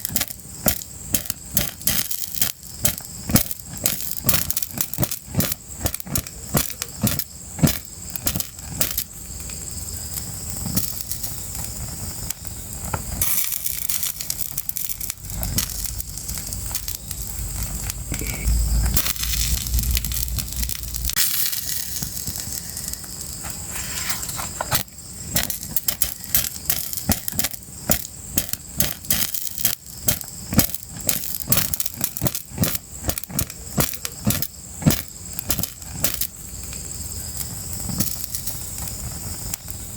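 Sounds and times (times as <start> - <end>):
fire crackling and popping: 0.0 - 39.9
low rumble: 14.9 - 21.2.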